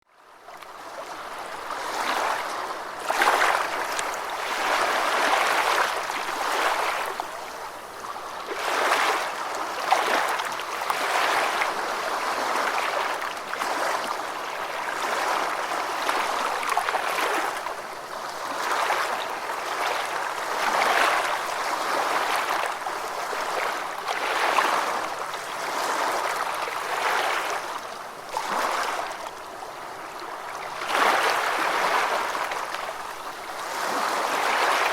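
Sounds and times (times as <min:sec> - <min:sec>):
ocean waves washing: 0:00.8 - 0:34.9.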